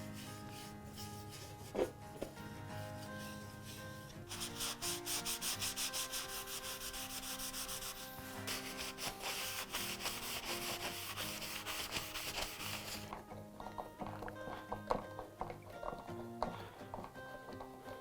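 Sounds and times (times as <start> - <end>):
sanding wood by hand: 0.0 - 1.8, 3.0 - 13.1.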